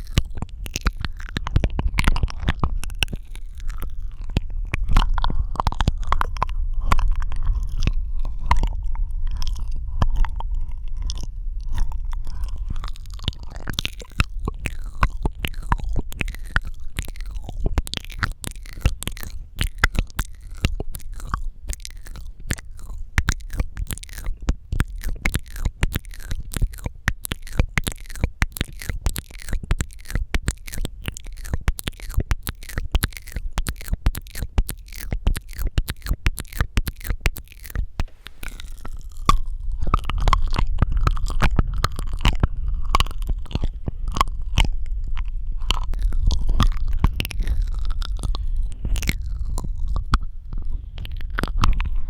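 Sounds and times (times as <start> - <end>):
lip smacks: 0.0 - 52.0
tongue clicks: 0.0 - 52.0.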